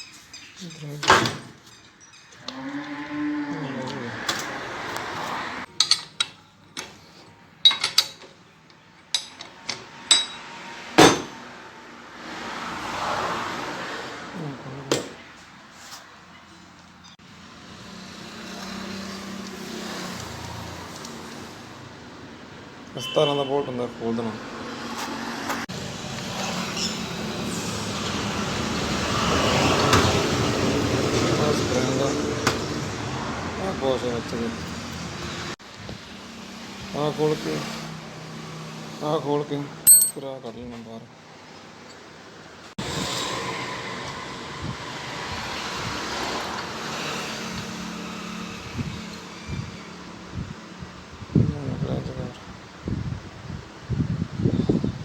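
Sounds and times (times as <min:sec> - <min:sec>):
cow mooing: 0:02.4 - 0:04.6
metallic clanks of tools: 0:05.7 - 0:07.0, 0:07.6 - 0:11.4, 0:39.9 - 0:40.3.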